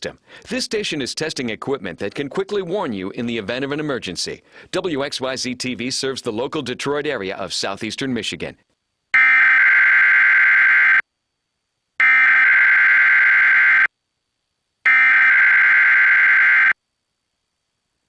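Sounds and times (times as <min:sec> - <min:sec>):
digital data tone bursts: 0:12.0 - 0:13.9, 0:14.9 - 0:16.8.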